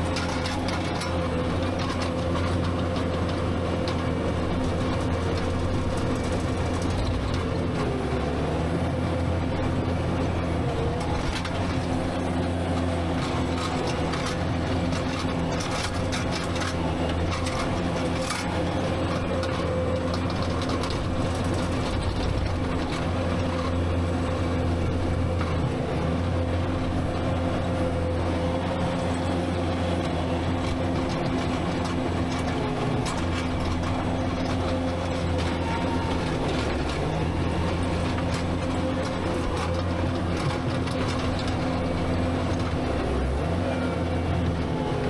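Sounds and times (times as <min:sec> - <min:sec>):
clanks and rattles: 0:00.0 - 0:45.0
diesel engine running: 0:00.0 - 0:45.0.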